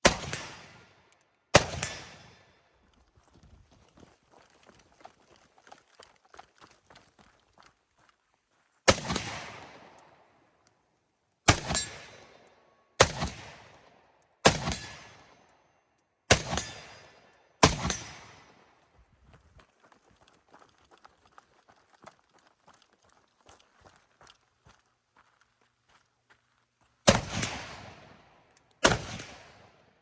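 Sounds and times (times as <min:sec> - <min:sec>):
rifle shots with echo: 0:00.0 - 0:02.6, 0:08.9 - 0:10.2, 0:11.5 - 0:12.4, 0:13.0 - 0:15.4, 0:16.3 - 0:18.6, 0:27.1 - 0:30.0.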